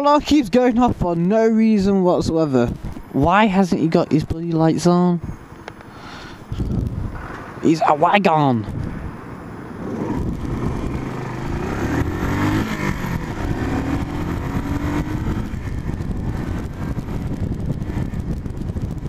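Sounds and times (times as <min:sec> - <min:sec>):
road noise: 0:00.0 - 0:19.0
car engine: 0:05.5 - 0:19.0.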